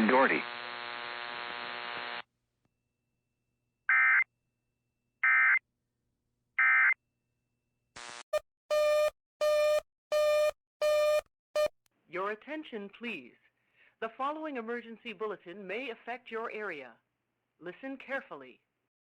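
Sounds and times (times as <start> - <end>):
broadcast hum: 0.0 - 2.2
static burst: 0.0 - 2.2
harsh buzzing tone: 0.0 - 2.3, 8.0 - 9.1.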